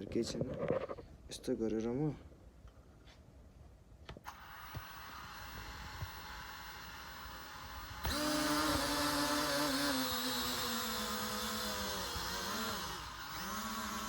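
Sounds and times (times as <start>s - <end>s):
drone motors whining: 4.3s - 14.0s.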